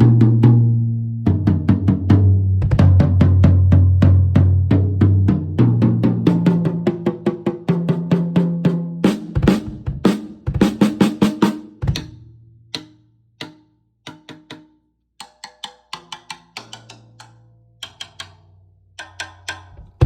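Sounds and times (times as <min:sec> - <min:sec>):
drum kit fills: 0:01.3 - 0:12.1.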